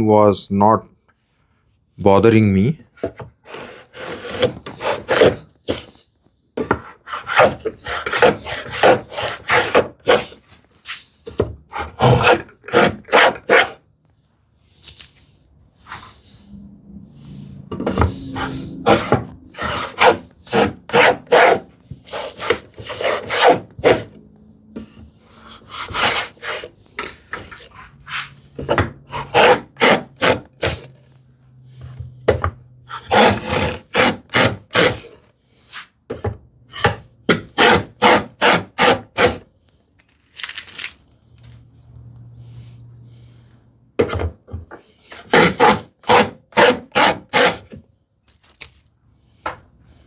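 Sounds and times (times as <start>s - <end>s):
hand plane cutting wood: 3.1s - 6.0s, 6.6s - 10.5s, 11.7s - 13.8s, 17.9s - 24.2s, 24.8s - 31.1s, 32.9s - 35.3s, 36.8s - 39.4s, 45.0s - 47.8s.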